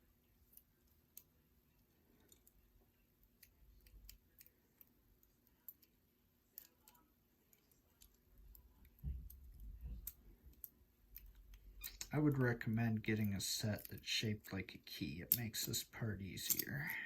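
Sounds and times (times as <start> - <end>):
metallic clicks of lock picking: 16.4 - 16.8.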